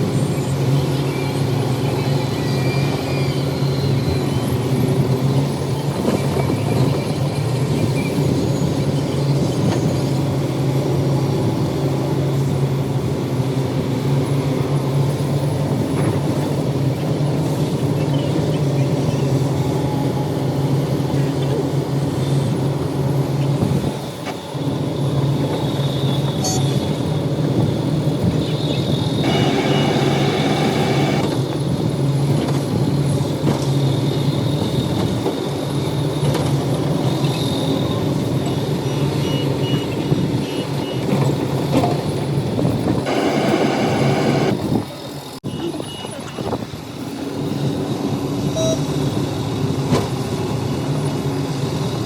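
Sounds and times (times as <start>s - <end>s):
diesel machinery engine drone: 0.0s - 52.0s
high whine: 29.0s - 31.3s, 43.0s - 44.8s.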